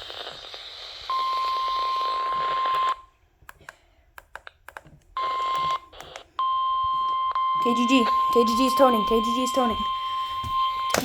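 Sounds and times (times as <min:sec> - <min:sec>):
radio static hiss: 0:00.0 - 0:02.6.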